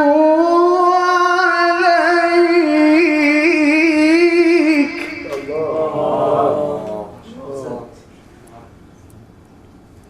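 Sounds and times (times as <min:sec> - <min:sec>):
man reciting melodically: 0:00.0 - 0:08.0.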